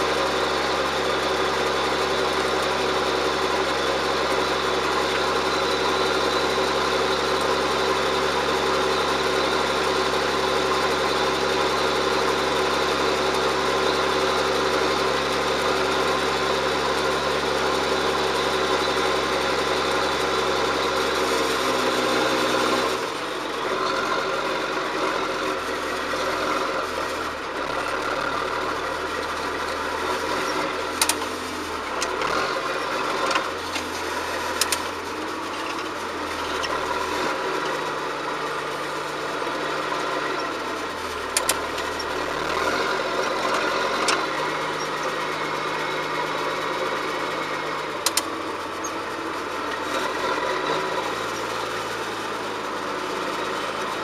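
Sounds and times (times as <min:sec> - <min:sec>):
diesel engine running: 0:00.0 - 0:54.0
sharp clicks: 0:34.6 - 0:34.8, 0:48.0 - 0:48.3.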